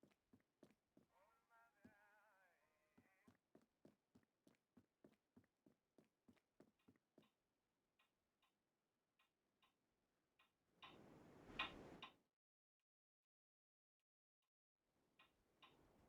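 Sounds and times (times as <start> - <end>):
rustling noise: 10.8 - 12.1.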